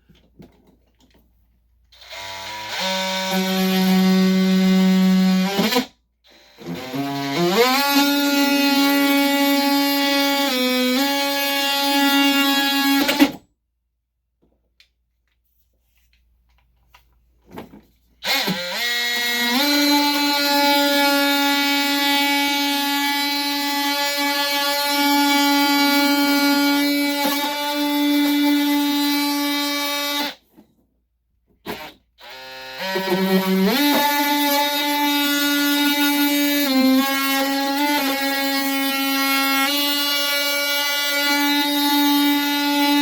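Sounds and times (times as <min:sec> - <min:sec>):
power tool motor whining: 0:18.2 - 0:30.4, 0:31.6 - 0:43.0.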